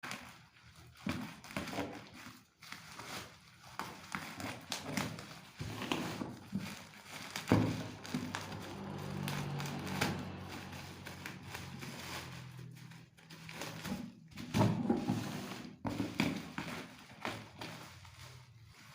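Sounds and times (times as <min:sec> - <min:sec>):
packaging crinkling: 0:00.1 - 0:14.8.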